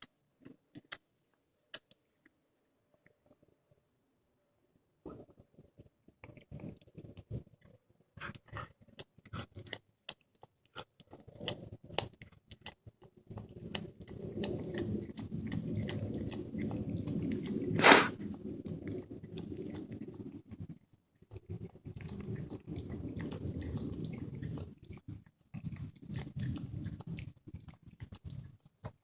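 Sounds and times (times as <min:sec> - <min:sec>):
cat chewing and crunching: 0:00.0 - 0:01.1, 0:05.1 - 0:29.0
cat purring: 0:05.1 - 0:09.8, 0:10.7 - 0:29.0.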